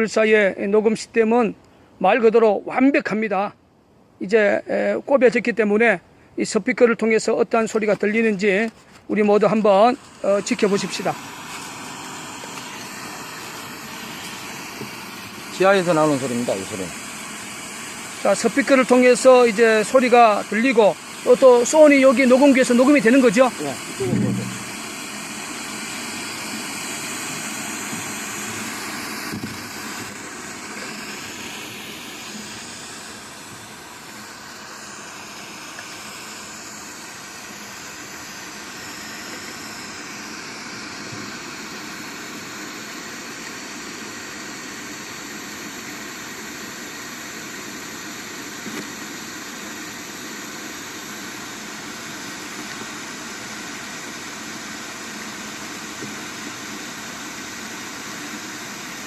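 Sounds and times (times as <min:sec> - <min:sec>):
steady rushing noise: 0:18.2 - 0:36.5.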